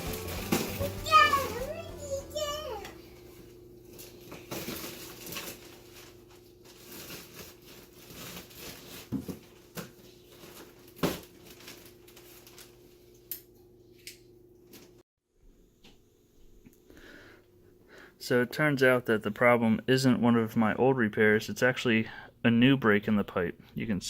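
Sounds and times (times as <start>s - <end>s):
crinkling and tearing: 0.0s - 2.5s, 3.9s - 12.9s.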